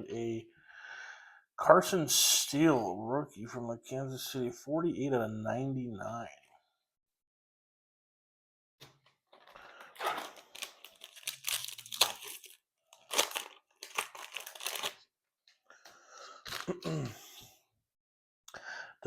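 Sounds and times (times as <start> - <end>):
foil wrapper tearing and crinkling: 9.4 - 15.0, 16.4 - 16.8.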